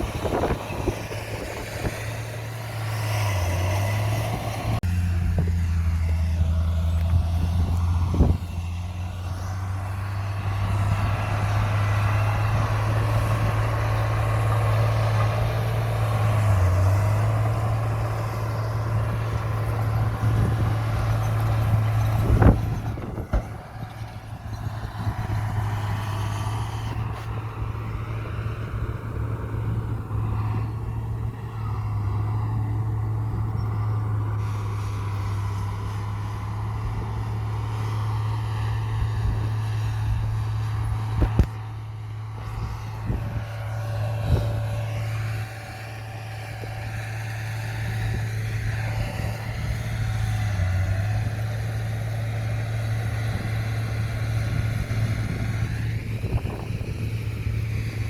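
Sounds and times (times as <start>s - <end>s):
diesel machinery running: 0.0s - 58.0s.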